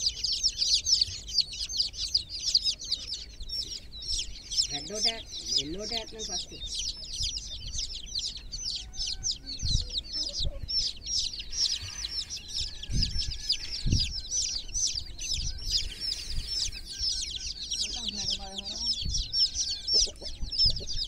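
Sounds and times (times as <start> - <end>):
chicks peeping: 0.0 - 21.0
dull low thumps: 9.2 - 17.2.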